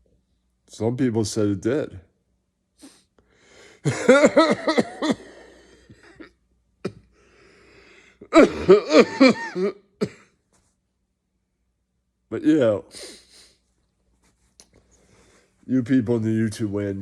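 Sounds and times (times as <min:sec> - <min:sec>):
person coughing: 0:03.9 - 0:07.2, 0:08.2 - 0:10.4.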